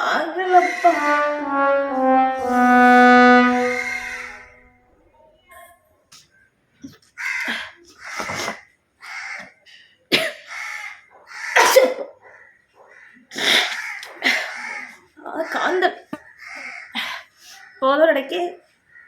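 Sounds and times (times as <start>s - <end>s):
breaths: 7.4s - 7.9s, 9.6s - 10.1s, 16.9s - 17.7s.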